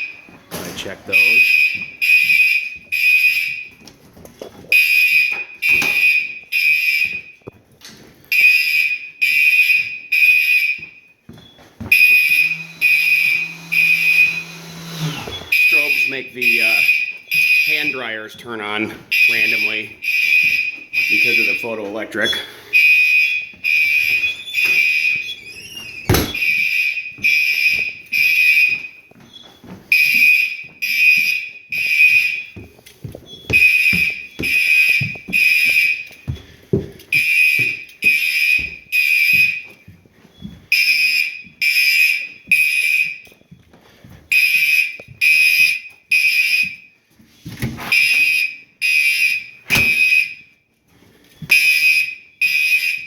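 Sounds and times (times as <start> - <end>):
fire alarm horn blasts: 1.1 - 3.8, 4.7 - 7.5, 8.3 - 11.2, 11.9 - 29.1, 29.9 - 32.6, 33.5 - 36.2, 37.1 - 39.8, 40.7 - 43.4, 44.3 - 47.0, 47.8 - 50.7, 51.5 - 53.0
sharp knocks: 26.1 - 26.5.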